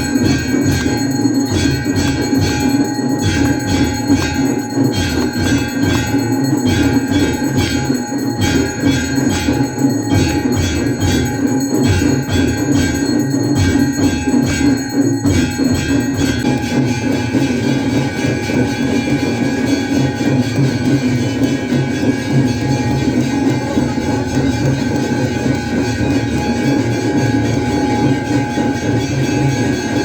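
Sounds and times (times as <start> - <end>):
bells ringing: 0.0 - 30.0
fast drumbeat: 0.0 - 30.0.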